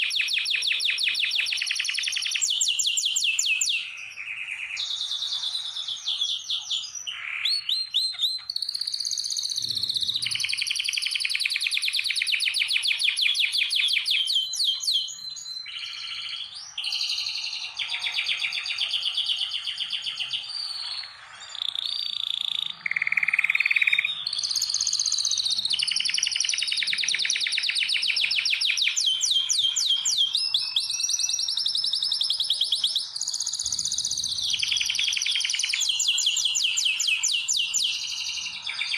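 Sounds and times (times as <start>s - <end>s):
canaries singing trills: 0.0s - 38.9s.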